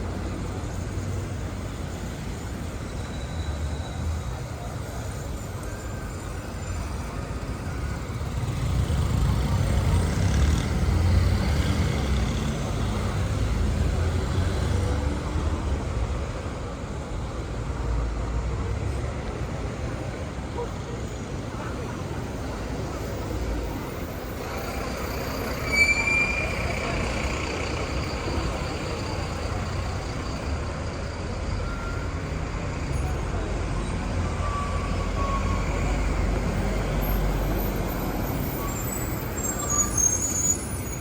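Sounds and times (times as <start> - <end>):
short high squeal: 24.5 - 28.4, 38.2 - 41.0.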